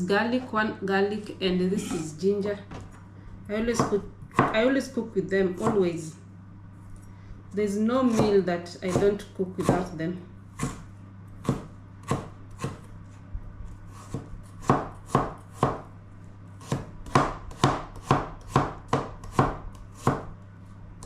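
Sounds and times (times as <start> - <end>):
knife chopping on cutting board: 3.7 - 4.6, 10.6 - 12.9, 13.9 - 15.9, 16.6 - 20.3.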